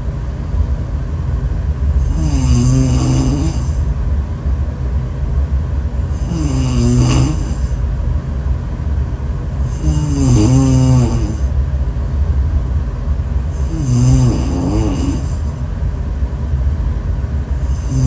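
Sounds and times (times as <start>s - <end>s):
steady low rumble: 0.0s - 18.0s
person snoring: 2.0s - 3.8s, 6.1s - 7.8s, 9.6s - 11.5s, 13.5s - 15.5s, 17.6s - 18.0s.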